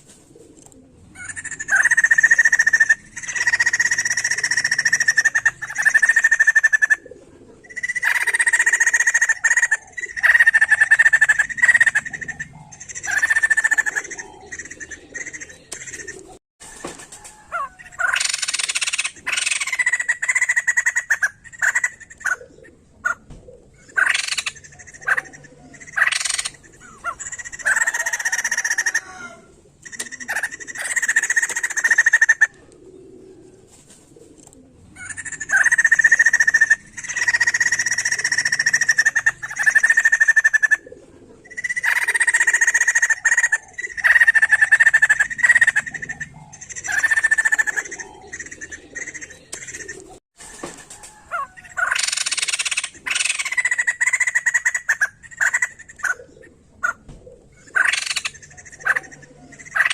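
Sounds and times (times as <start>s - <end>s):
bird calling in harsh phrases: 1.1s - 16.4s, 17.1s - 33.4s, 34.9s - 50.2s, 50.9s - 59.9s.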